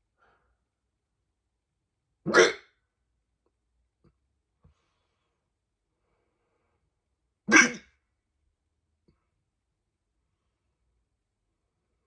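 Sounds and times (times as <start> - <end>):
person hiccuping: 2.3 - 2.6, 7.5 - 7.8.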